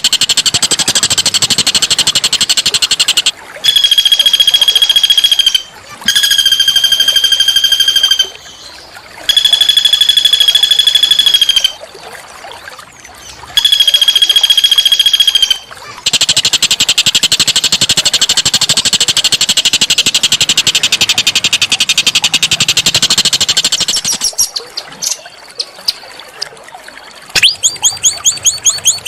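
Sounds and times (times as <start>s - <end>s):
songbird rattling trills: 0.0s - 11.8s, 13.2s - 26.0s, 27.4s - 29.0s.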